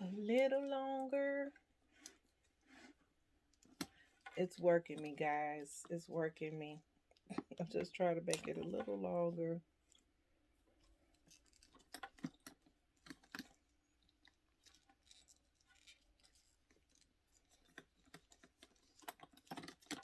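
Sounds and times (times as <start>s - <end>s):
handbag strap clicks and scrapes: 10.8s - 20.0s.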